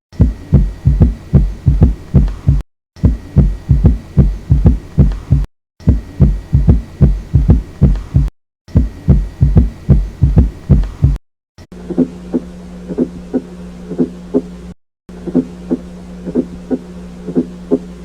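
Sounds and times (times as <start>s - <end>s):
heartbeat thumps: 0.1s - 11.2s.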